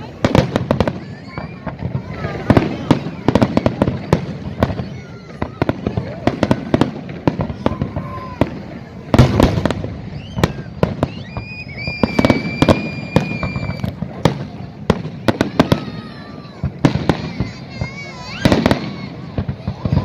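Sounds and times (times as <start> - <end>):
fireworks bangs: 0.0 - 20.0
steady high whistle: 10.0 - 13.9.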